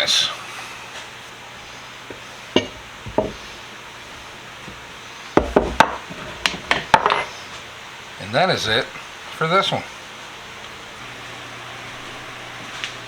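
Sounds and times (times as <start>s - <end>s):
pipe wrench knocking and clacking: 2.6s - 3.4s.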